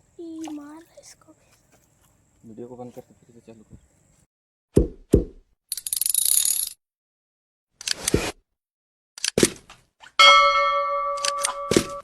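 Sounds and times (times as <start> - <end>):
bell-like metallic ring: 10.2 - 12.0.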